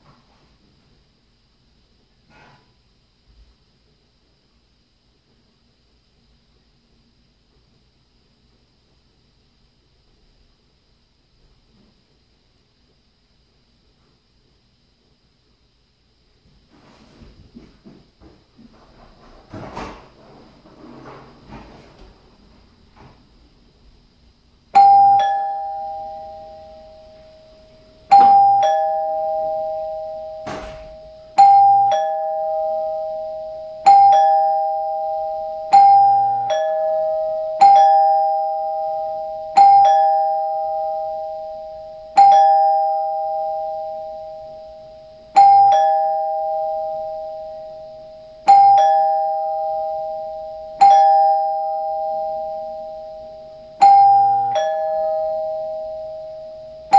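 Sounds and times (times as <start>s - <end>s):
two-note door chime: 24.8s - 56.9s.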